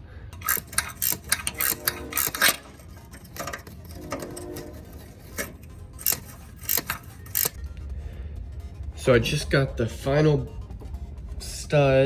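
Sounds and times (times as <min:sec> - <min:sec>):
ratchet wrench clicking: 0:00.3 - 0:07.6
fastener squeaking: 0:00.4 - 0:07.6
metal hand tools clinking: 0:00.4 - 0:07.6.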